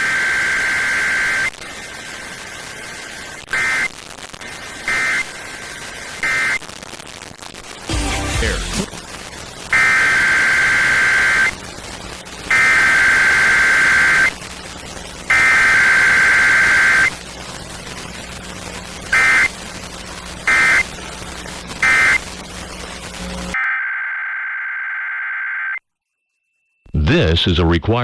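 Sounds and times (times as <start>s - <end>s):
radio hiss: 0.0s - 23.6s
screeching digital data bursts: 12.5s - 14.4s, 15.3s - 17.2s, 21.8s - 22.3s.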